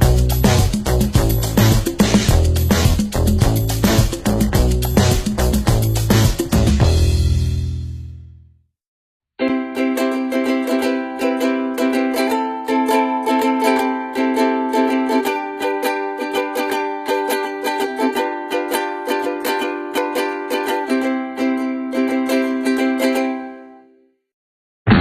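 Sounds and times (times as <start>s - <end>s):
plucked-string ringtone melody: 9.4s - 23.7s.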